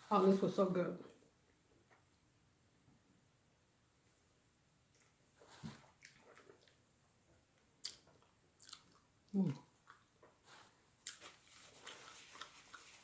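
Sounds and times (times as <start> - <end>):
wet mouth chewing: 5.8 - 6.8, 7.8 - 13.0.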